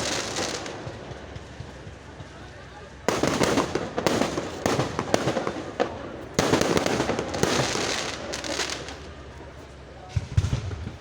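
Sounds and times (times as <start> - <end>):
fireworks bangs and crackles: 0.0 - 11.0.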